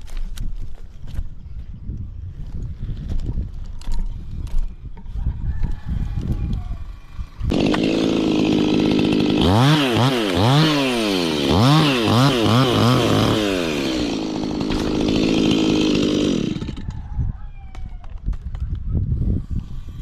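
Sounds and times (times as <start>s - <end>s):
chainsaw engine revving and idling: 6.8s - 16.9s.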